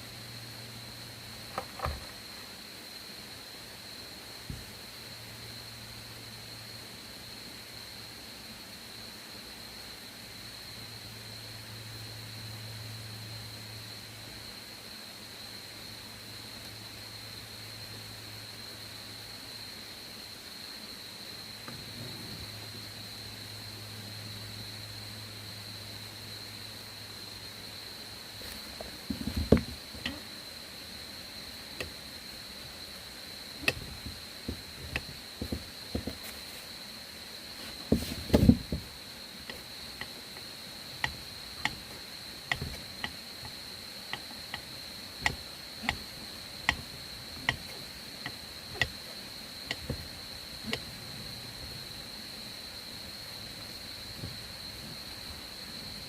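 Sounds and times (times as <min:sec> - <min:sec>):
insects chirring: 0:00.0 - 0:56.0
sharp knocks and taps: 0:28.5 - 0:30.2, 0:33.6 - 0:36.3, 0:41.0 - 0:41.9, 0:42.5 - 0:49.0, 0:49.7 - 0:50.1.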